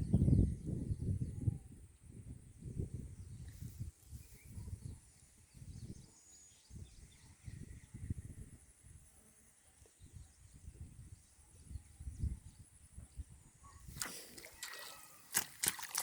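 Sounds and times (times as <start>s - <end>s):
wind rumbling on microphone: 0.0s - 9.2s, 9.8s - 16.0s
faint bird chirps: 0.0s - 15.3s.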